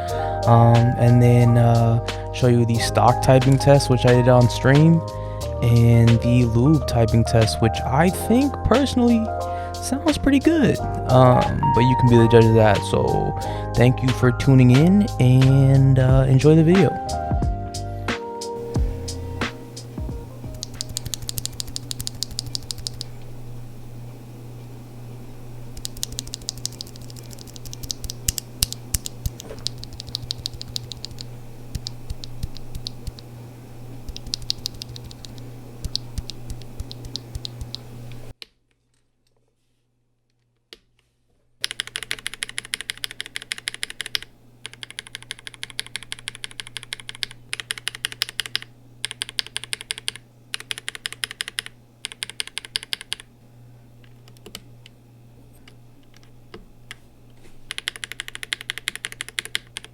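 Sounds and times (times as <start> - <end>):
mechanical keyboard typing: 19.8 - 23.3, 25.8 - 33.3, 34.0 - 38.3, 41.6 - 53.3, 57.7 - 59.9.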